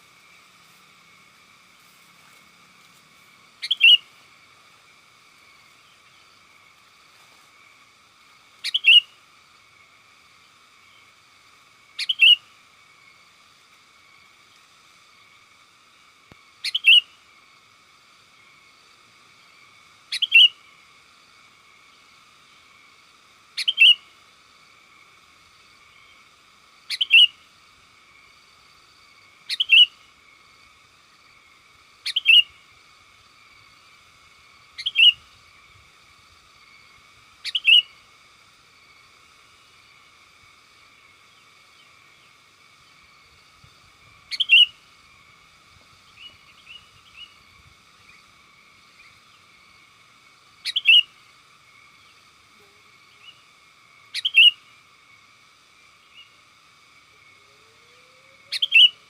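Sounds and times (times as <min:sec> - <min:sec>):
faint high-pitched buzz: 0:00.0 - 0:59.0
bulbul double-note calls: 0:03.6 - 0:04.1, 0:08.6 - 0:09.2, 0:12.0 - 0:12.5, 0:16.6 - 0:17.2, 0:20.1 - 0:20.7, 0:23.6 - 0:24.1, 0:26.9 - 0:27.4, 0:29.5 - 0:30.1, 0:32.0 - 0:32.6, 0:34.7 - 0:35.4, 0:37.4 - 0:38.1, 0:44.2 - 0:44.8, 0:50.6 - 0:51.2, 0:54.1 - 0:54.7, 0:57.3 - 0:59.0.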